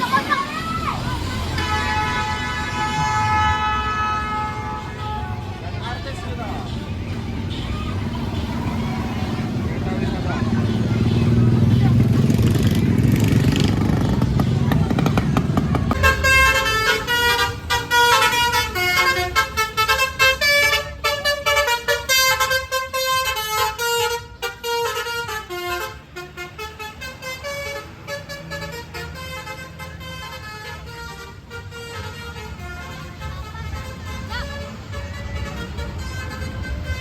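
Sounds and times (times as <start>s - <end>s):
musical air horn playing a tune: 1.4s - 5.4s, 16.0s - 37.0s.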